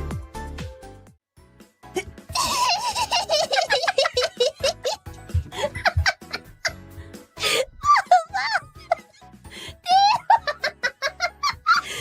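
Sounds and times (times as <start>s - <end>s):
woman giggling: 1.9s - 6.8s, 7.8s - 9.1s.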